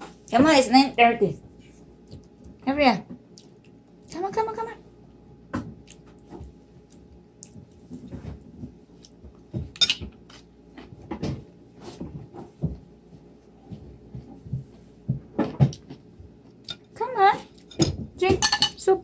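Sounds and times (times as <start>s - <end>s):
dishes and utensils clinking: 9.8s - 10.1s, 17.6s - 18.9s
dishes clattering: 17.7s - 18.8s.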